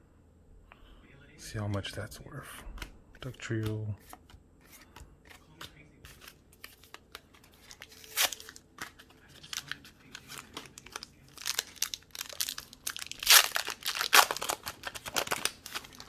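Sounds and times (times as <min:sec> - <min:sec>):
foil wrapper crinkling: 0:06.6 - 0:16.0
wrapper tearing: 0:07.6 - 0:16.0.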